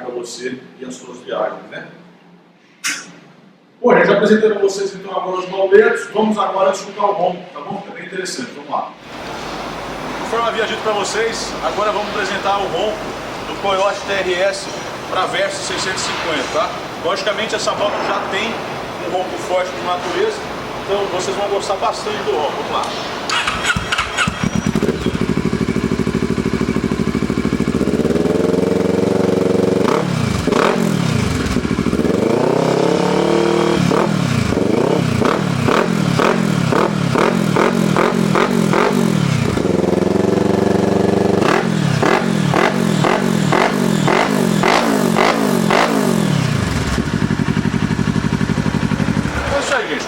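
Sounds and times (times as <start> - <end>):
motorcycle engine idling and revving: 23.3 - 50.0.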